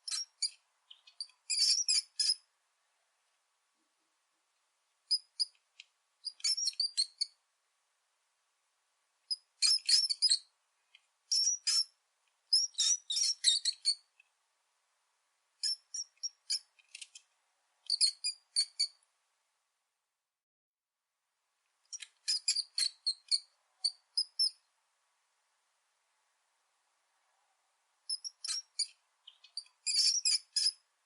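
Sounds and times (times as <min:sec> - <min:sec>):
rat squeaking: 0:00.0 - 0:02.5, 0:05.1 - 0:05.6, 0:06.2 - 0:07.4, 0:09.3 - 0:10.5, 0:11.3 - 0:14.1, 0:15.6 - 0:17.2, 0:17.8 - 0:19.0, 0:21.9 - 0:24.6, 0:28.1 - 0:30.9.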